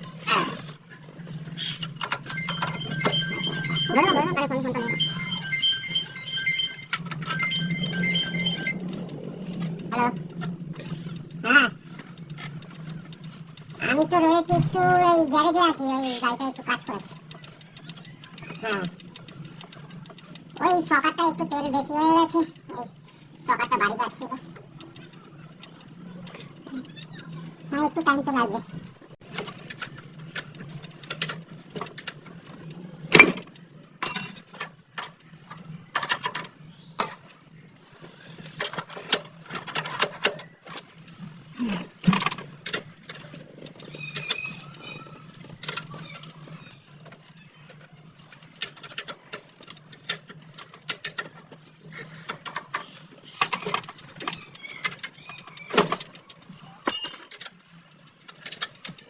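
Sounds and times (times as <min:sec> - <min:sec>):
clicks and knocks of hand tools: 0:56.9 - 0:57.6.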